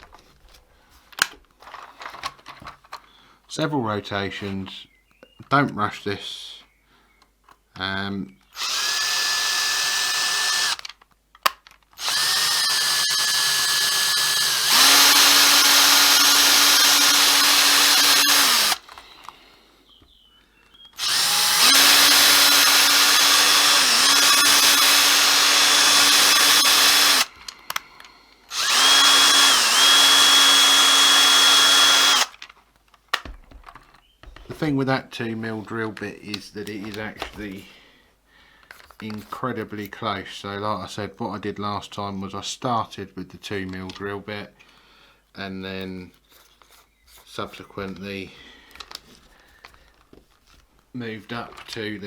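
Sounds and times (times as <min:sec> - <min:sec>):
small electric drill whining: 0:08.5 - 0:11.0, 0:12.0 - 0:19.4, 0:21.0 - 0:32.4.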